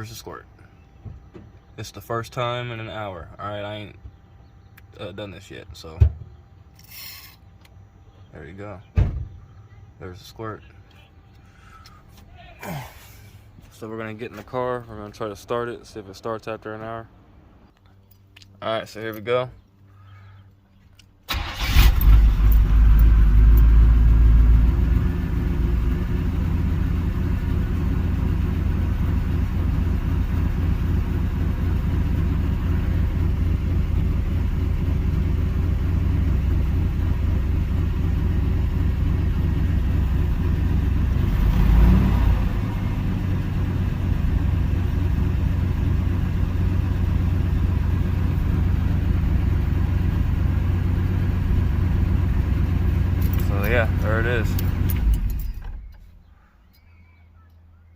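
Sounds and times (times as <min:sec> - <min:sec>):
car engine starting and revving: 0:21.3 - 0:55.9
car engine idling: 0:21.3 - 0:56.2.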